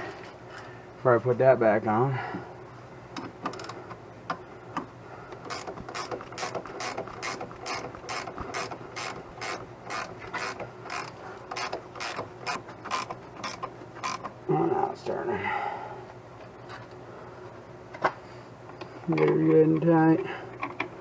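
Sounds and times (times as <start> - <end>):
ratchet wrench clicking: 5.5 - 14.2.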